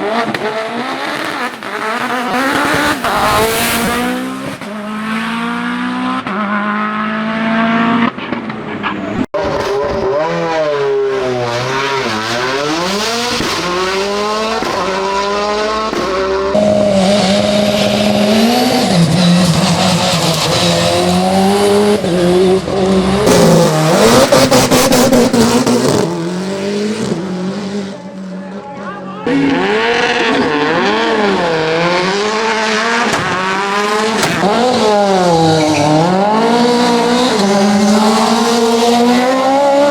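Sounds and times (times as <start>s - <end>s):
race car engine at full throttle: 0.0s - 39.9s
sharp cracks: 14.5s - 15.1s, 15.8s - 16.4s.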